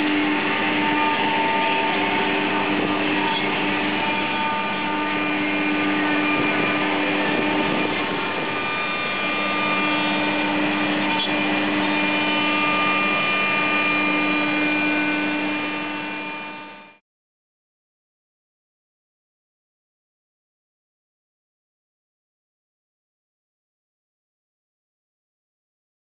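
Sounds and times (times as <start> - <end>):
cnc router whining: 0.0 - 17.0.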